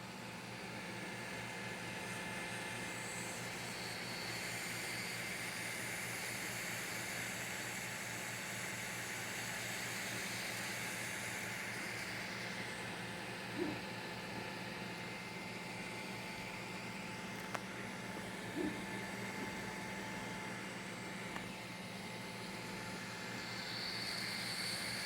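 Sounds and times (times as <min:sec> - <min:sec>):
printer fan hiss: 0:00.0 - 0:25.0
motor whines: 0:17.9 - 0:25.0.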